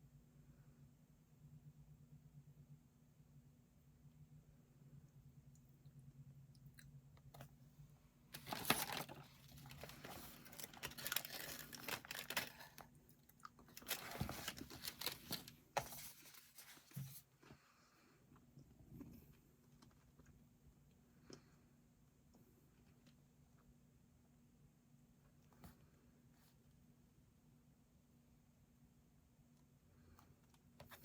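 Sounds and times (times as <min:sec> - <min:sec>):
rustling and crinkling: 0:08.3 - 0:17.6.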